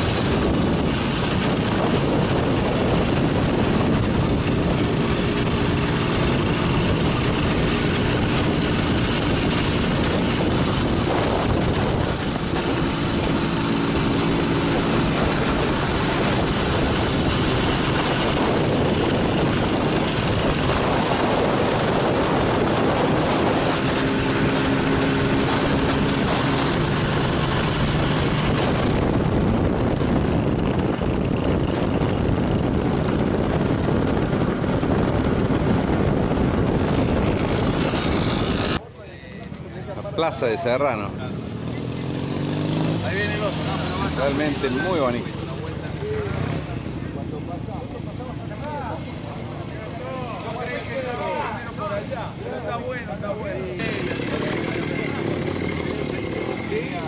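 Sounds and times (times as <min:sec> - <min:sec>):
wind rush on microphone: 0:00.0 - 0:38.8
motorcycle engine running: 0:00.0 - 0:52.3, 0:53.5 - 0:57.0.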